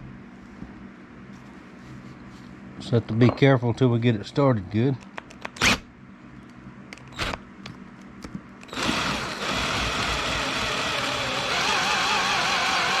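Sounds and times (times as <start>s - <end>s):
electric drill with hole saw cutting: 7.2s - 7.4s, 8.7s - 13.0s.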